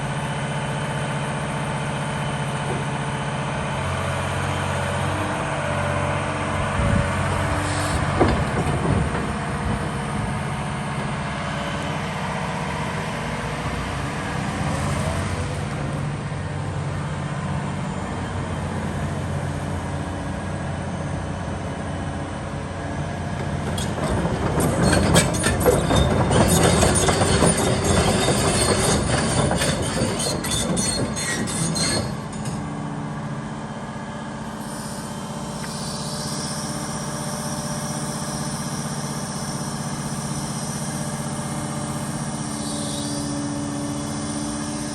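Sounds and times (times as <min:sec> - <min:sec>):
excavator diesel engine running: 0:00.0 - 0:44.9
metallic clanking and squealing: 0:06.6 - 0:11.2, 0:23.4 - 0:32.9, 0:34.6 - 0:44.9.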